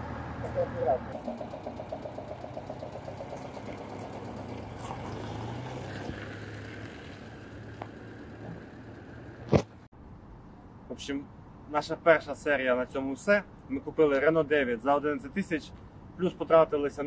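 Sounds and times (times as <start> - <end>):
car engine humming: 0.0 - 9.9.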